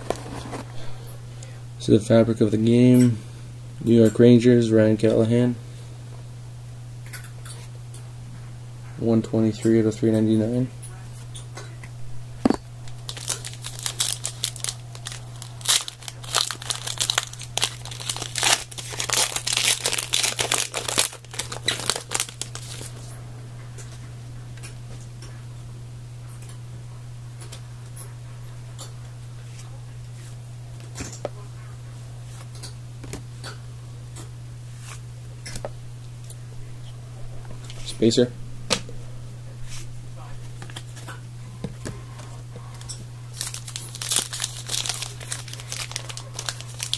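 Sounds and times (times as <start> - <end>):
foil wrapper crinkling and tearing: 12.8 - 23.1, 43.3 - 46.9.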